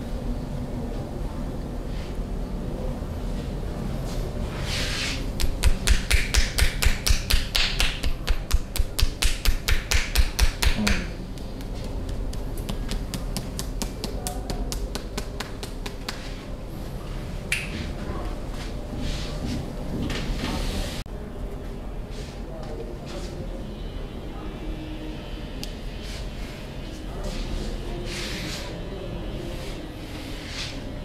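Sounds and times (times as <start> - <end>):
percussive massage strokes clapping: 5.3 - 16.4.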